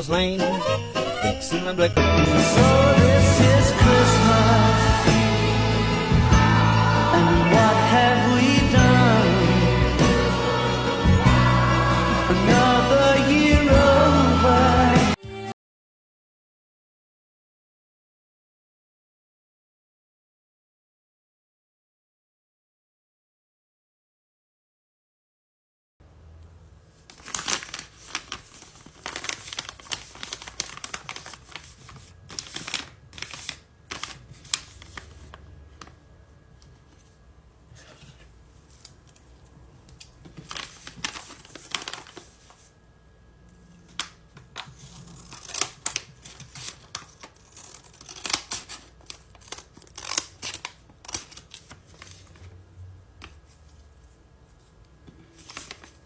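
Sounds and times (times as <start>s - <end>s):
paper and tape crinkling: 27.0s - 35.4s, 37.8s - 42.8s, 43.9s - 52.5s, 55.4s - 56.0s.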